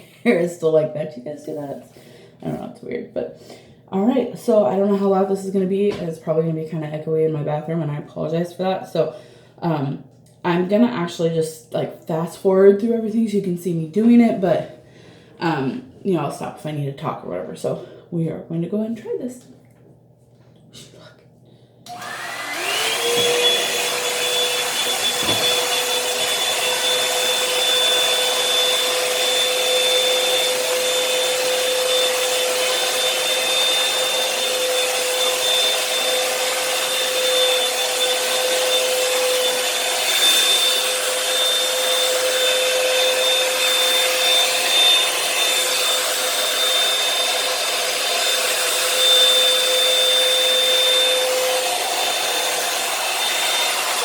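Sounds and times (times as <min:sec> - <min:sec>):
hair dryer motor whine: 0:21.8 - 0:54.0.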